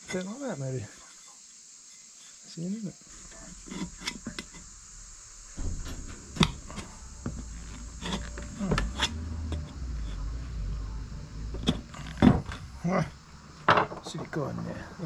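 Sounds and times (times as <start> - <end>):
insects chirring: 0.0 - 15.0
tyre rubbing rumble: 3.1 - 13.2.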